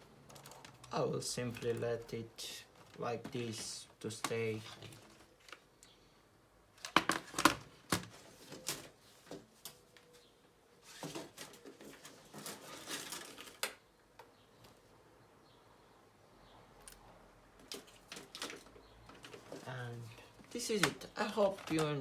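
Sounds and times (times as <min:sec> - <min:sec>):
plastic laptop parts clicking: 0:00.2 - 0:01.8, 0:06.8 - 0:08.1, 0:20.6 - 0:22.0
rustling and scraping: 0:02.5 - 0:05.6, 0:06.8 - 0:13.7, 0:17.6 - 0:22.0.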